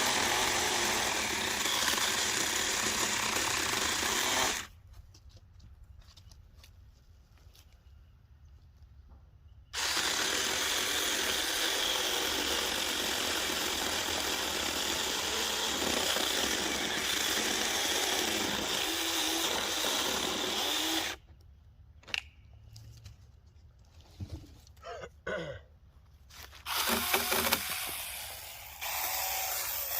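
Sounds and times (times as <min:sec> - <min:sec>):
handheld chainsaw running: 0:00.0 - 0:04.7.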